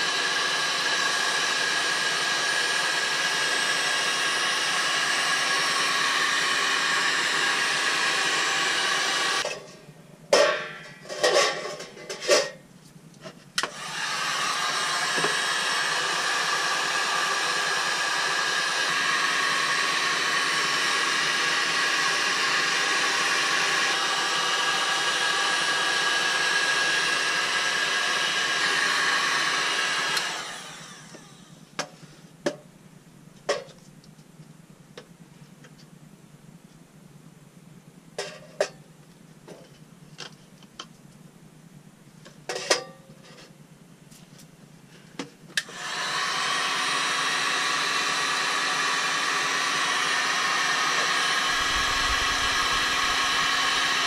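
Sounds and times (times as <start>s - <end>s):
electric blower motor whirring: 0.0s - 9.5s, 13.6s - 31.7s, 45.6s - 54.0s.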